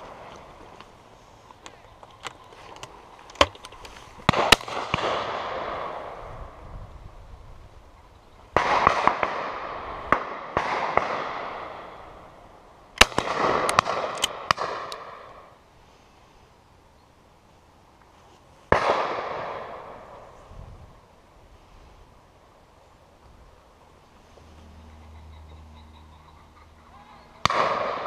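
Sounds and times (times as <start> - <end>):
shotgun shots with rolling echo: 4.3 - 6.3, 8.6 - 12.1, 13.0 - 15.5, 18.7 - 20.2, 27.4 - 28.0.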